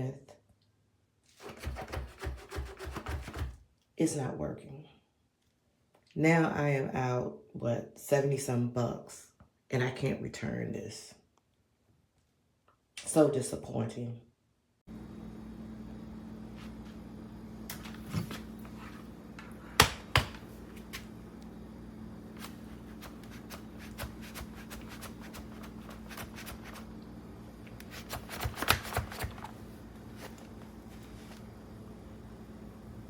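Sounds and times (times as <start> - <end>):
steady low hum: 14.9 - 33.0.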